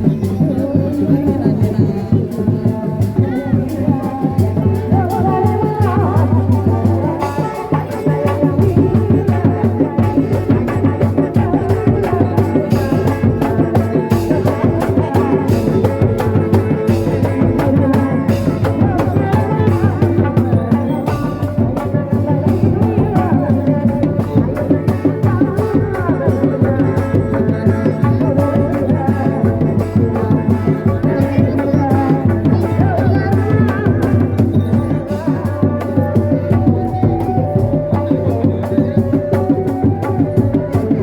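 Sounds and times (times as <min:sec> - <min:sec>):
fast drum strokes: 0:00.0 - 0:41.0.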